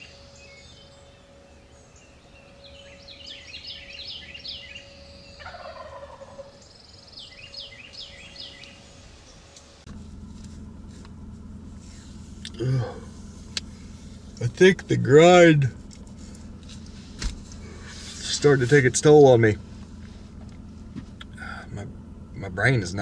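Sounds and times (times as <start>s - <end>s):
steady low hum: 0.0s - 23.0s
turkey gobbling: 3.1s - 8.8s.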